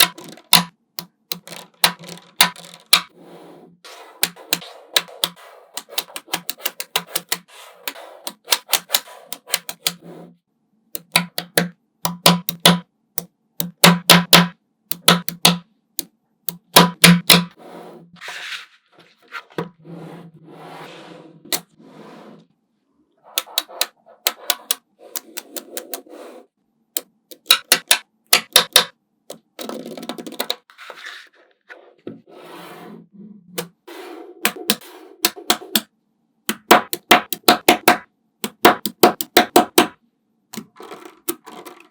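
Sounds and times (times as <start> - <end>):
balls rustling and rolling: 0.0 - 0.7, 1.3 - 7.2, 40.6 - 41.9
magnetic balls clicking together: 0.0 - 3.1, 4.2 - 10.0, 11.0 - 17.6, 27.0 - 30.7, 34.4 - 35.9, 36.5 - 41.9.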